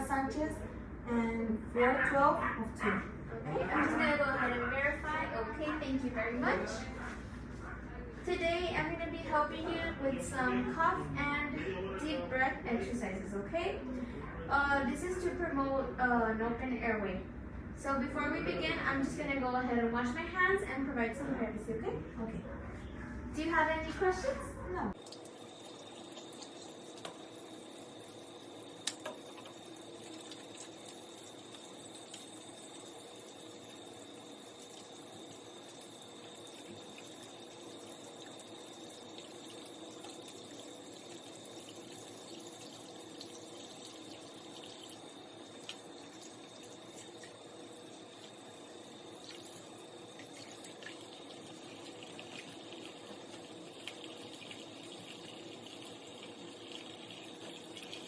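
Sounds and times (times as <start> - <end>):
tap water running into sink: 25.0 - 58.0.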